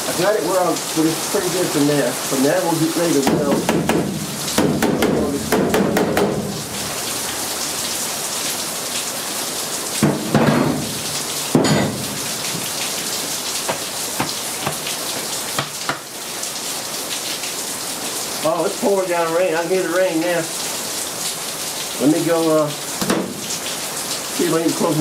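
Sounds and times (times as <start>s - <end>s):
heavy rain pouring: 0.0s - 25.0s
knocks: 3.2s - 6.6s, 10.0s - 10.9s, 11.5s - 12.7s, 13.6s - 14.8s, 15.6s - 16.0s, 23.0s - 23.4s.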